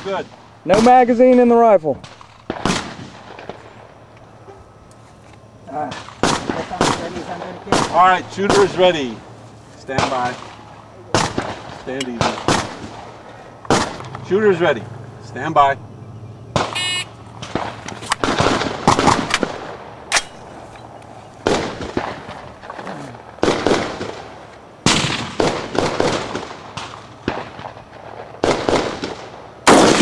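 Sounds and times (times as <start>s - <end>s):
rifle shots with ringing echo: 0.0s - 4.2s, 5.8s - 9.3s, 9.9s - 14.8s, 16.5s - 20.6s, 21.4s - 30.0s
shot timer buzzer beep: 16.7s - 17.2s.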